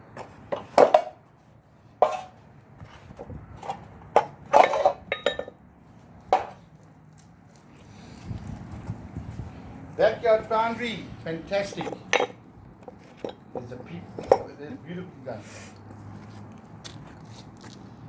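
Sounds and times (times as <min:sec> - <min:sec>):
metal objects clinking together: 0:04.6 - 0:05.6, 0:11.7 - 0:12.4.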